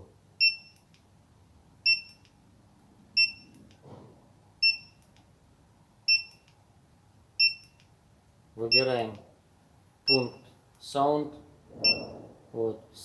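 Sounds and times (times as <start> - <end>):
short high-pitched beeps: 10.1 - 10.5, 11.8 - 12.2.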